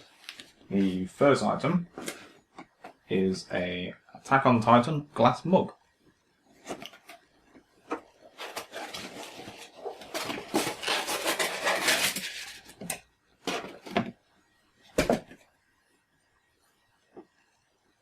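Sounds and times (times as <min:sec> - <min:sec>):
scraping and rustling: 0:07.8 - 0:14.1.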